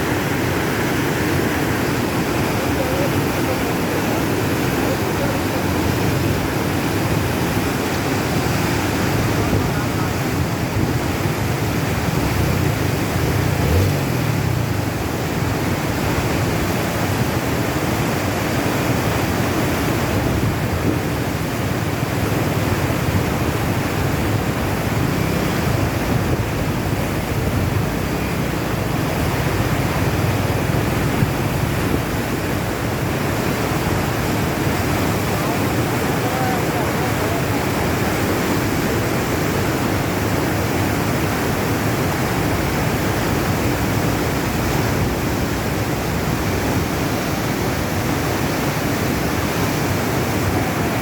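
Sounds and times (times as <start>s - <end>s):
floodwater rushing: 0.0s - 51.0s.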